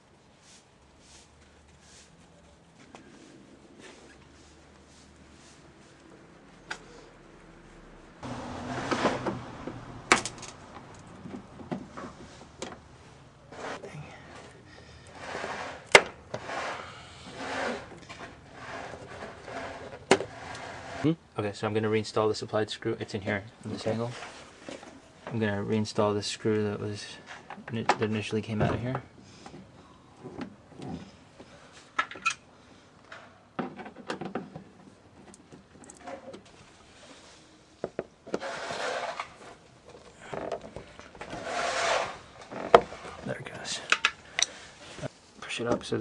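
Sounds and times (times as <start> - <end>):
plastic rubbing and scuffing: 0.2 - 7.0, 11.1 - 21.1, 38.2 - 43.3.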